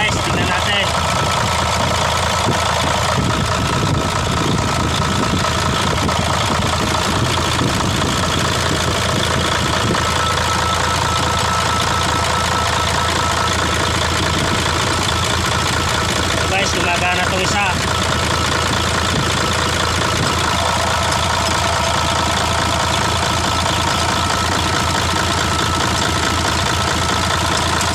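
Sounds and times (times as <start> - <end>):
diesel engine idling: 0.0 - 27.9
thin steady whine: 8.4 - 27.9.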